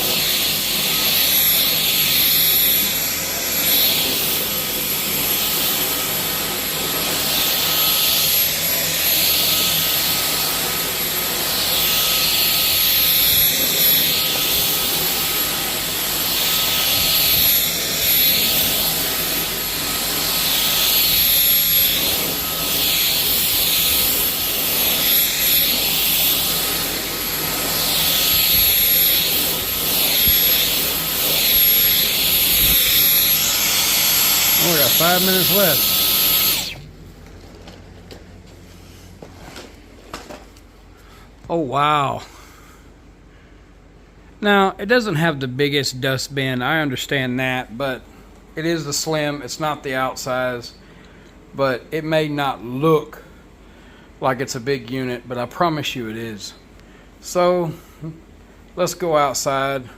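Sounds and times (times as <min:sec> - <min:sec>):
stick vacuum motor whining: 0:00.0 - 0:38.2.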